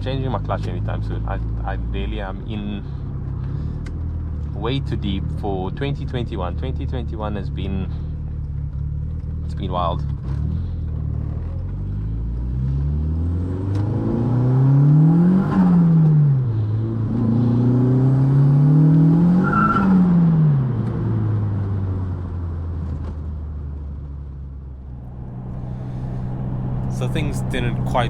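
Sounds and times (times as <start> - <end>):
car engine revving: 24.6 - 28.0
faint turbo whine: 24.6 - 28.0.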